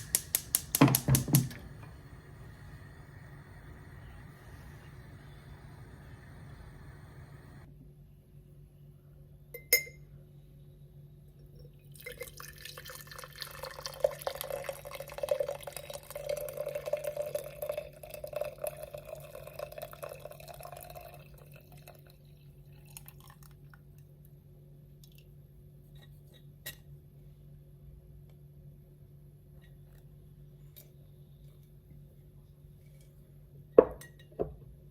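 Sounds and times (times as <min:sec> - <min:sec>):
glass clink: 0:09.6 - 0:10.0
liquid pouring into glass: 0:11.9 - 0:23.7.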